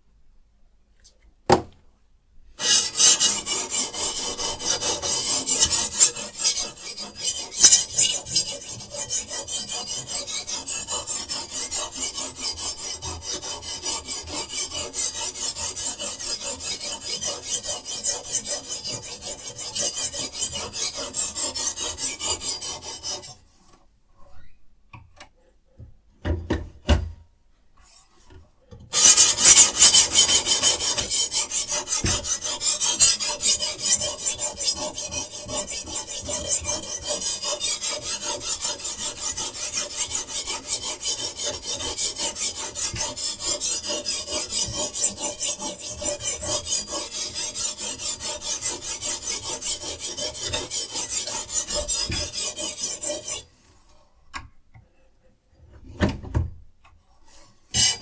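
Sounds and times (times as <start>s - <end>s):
stone scraping knife blade: 2.6s - 23.4s, 29.0s - 53.5s, 57.8s - 58.0s.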